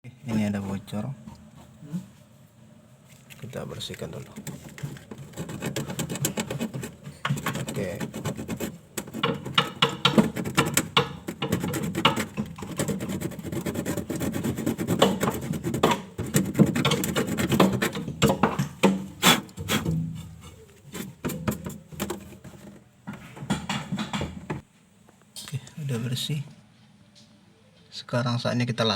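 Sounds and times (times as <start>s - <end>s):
scraping metal: 4.0s - 24.6s.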